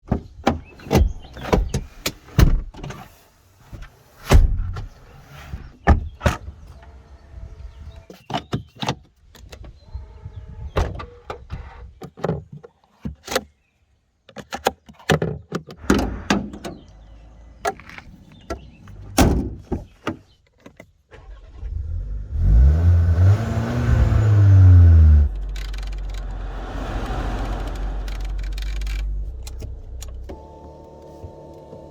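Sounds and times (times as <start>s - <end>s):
car clicks and thuds: 0.0s - 2.9s, 14.4s - 20.9s, 24.0s - 30.5s
car engine starting and idling: 15.8s - 19.7s, 21.1s - 31.9s.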